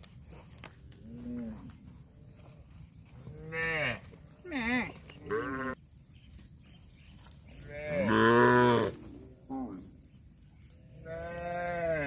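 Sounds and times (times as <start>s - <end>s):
cows mooing: 3.4s - 5.8s, 7.7s - 9.8s, 11.0s - 12.0s.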